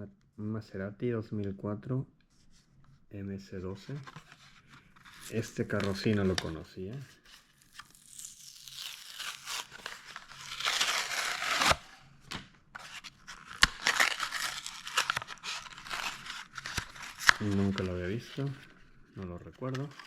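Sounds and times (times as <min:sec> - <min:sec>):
packaging tearing and crinkling: 0:05.0 - 0:06.6, 0:07.4 - 0:12.1, 0:12.8 - 0:18.7, 0:19.6 - 0:20.0.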